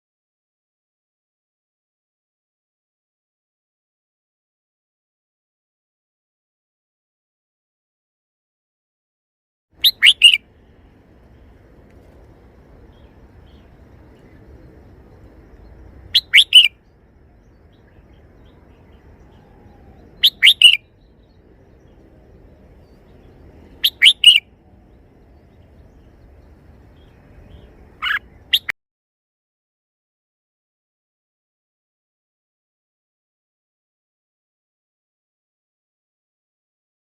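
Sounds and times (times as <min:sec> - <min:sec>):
bird singing short phrase: 0:09.8 - 0:10.4, 0:15.2 - 0:28.7.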